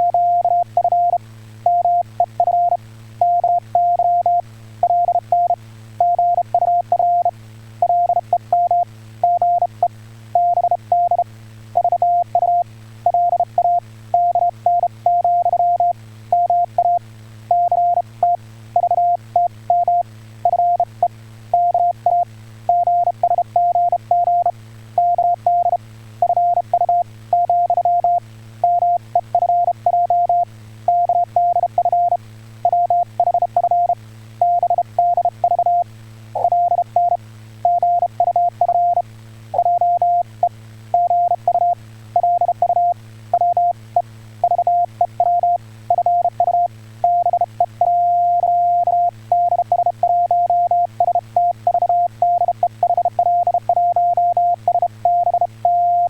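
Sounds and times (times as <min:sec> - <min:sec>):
steady low hum: 0:00.0 - 0:56.0
morse code beeps: 0:36.4 - 0:39.0, 0:39.6 - 0:40.2, 0:41.0 - 0:43.7, 0:44.5 - 0:56.0.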